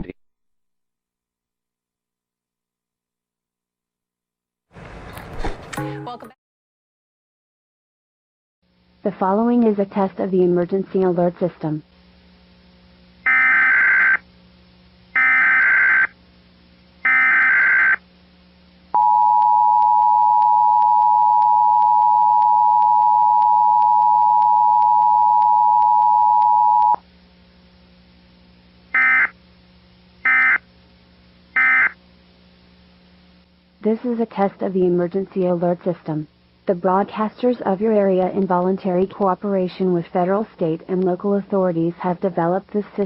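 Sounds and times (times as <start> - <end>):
buzzy data header bursts: 13.2 - 14.2, 15.1 - 16.2, 17.0 - 18.0, 28.9 - 29.4, 30.2 - 30.6, 31.5 - 32.0.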